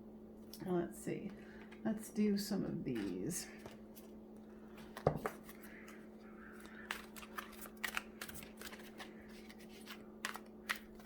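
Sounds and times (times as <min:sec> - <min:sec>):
faint steady hum: 0:00.0 - 0:11.0
cards being shuffled: 0:02.9 - 0:11.0.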